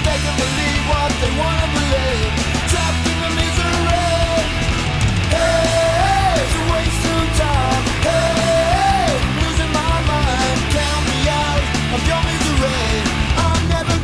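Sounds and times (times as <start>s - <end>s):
distorted guitars: 0.0s - 14.0s
drums: 0.0s - 14.0s
heavy rock music: 0.0s - 14.0s
person singing: 5.3s - 14.0s.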